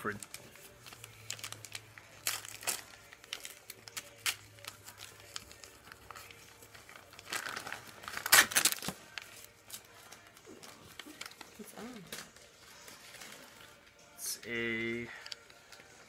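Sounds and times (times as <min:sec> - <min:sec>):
paper crinkling: 0:00.0 - 0:13.9
paper tearing: 0:07.0 - 0:09.9.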